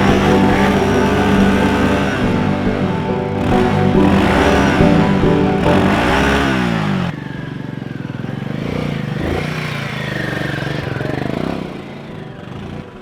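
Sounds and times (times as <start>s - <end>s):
music: 0.0s - 7.1s
motorcycle engine revving: 0.0s - 7.2s.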